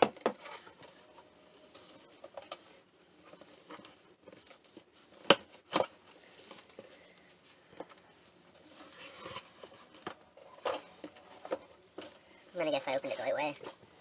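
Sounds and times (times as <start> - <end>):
cardboard box rustling and scraping: 8.1 - 10.0.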